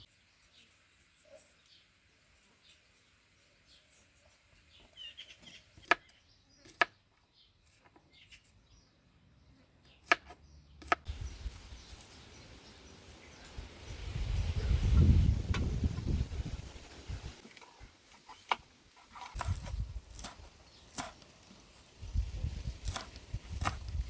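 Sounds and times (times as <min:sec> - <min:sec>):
faint bird chirps: 0:00.0 - 0:15.0.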